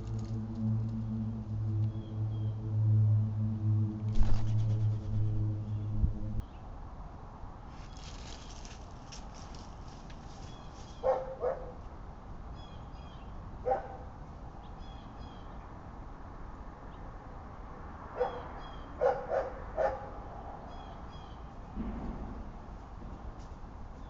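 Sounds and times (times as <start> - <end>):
dog barking: 11.0 - 11.8, 13.6 - 14.1, 18.2 - 20.1.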